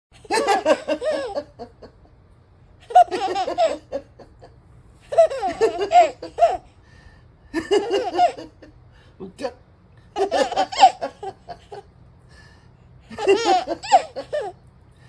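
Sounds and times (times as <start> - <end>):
baby giggling: 0.3 - 1.6, 2.8 - 4.2, 5.1 - 6.7, 7.7 - 8.6, 10.2 - 11.9, 13.1 - 14.6.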